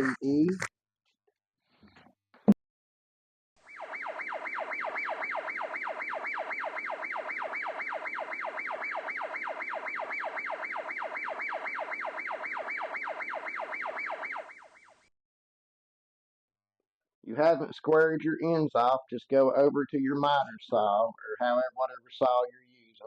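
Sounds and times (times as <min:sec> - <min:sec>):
electronic siren yelping: 0:03.6 - 0:15.1.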